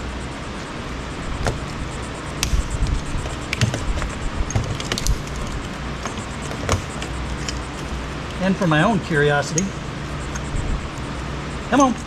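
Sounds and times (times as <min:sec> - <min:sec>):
low background rumble: 0:00.0 - 0:12.0
hand tools clinking on metal: 0:09.4 - 0:10.4.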